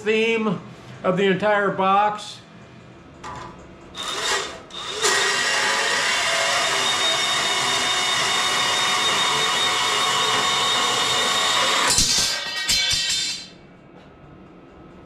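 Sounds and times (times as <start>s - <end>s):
power tool motor whining: 4.0s - 12.0s.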